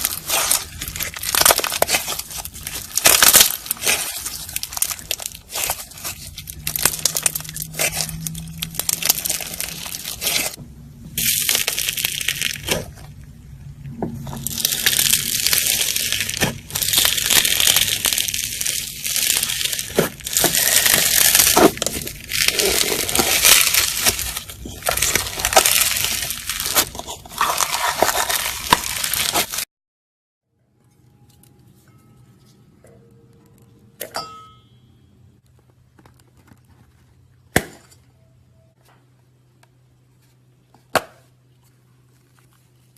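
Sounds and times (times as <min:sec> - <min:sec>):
slime crackling and crunching: 0:00.0 - 0:29.7.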